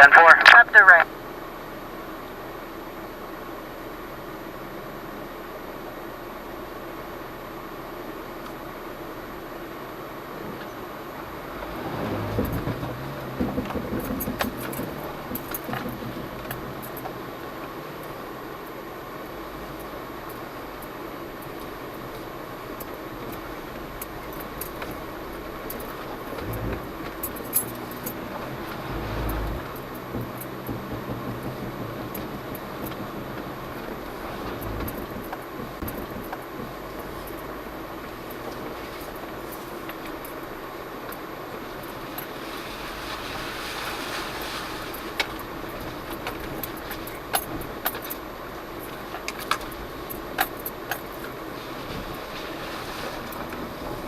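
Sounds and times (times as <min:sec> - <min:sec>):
engine low rumble: 0:00.0 - 0:54.0
road noise on dirt trail: 0:00.0 - 0:54.0
small rattles and clicks: 0:12.3 - 0:17.2, 0:19.8 - 0:41.2, 0:44.2 - 0:54.0.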